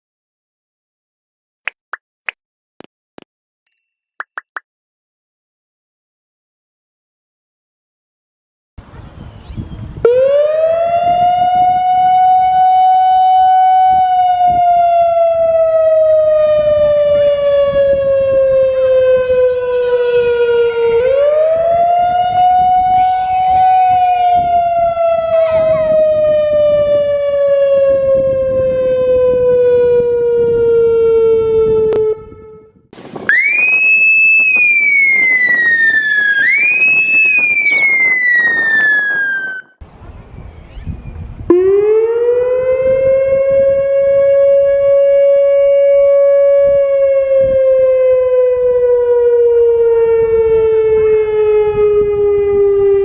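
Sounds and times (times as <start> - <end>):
electronic warning siren wailing: 33.0 - 39.7.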